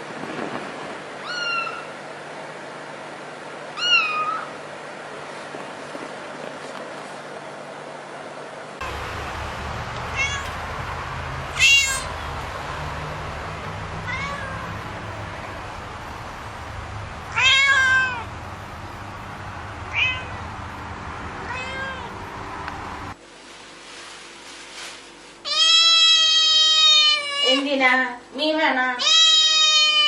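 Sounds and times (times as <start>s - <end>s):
steady low hum: 0.0s - 25.3s
cat meowing: 1.2s - 1.9s, 3.8s - 4.5s, 10.1s - 10.6s, 11.6s - 12.2s, 14.0s - 15.0s, 17.3s - 18.3s, 19.9s - 20.4s, 21.5s - 22.2s, 25.5s - 27.6s, 29.0s - 30.0s.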